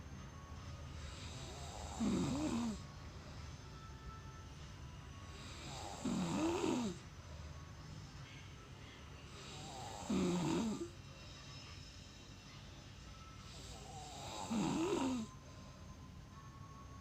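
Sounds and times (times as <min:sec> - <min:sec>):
pet snoring: 0:01.0 - 0:03.0, 0:05.3 - 0:07.1, 0:09.3 - 0:11.0, 0:13.5 - 0:15.5.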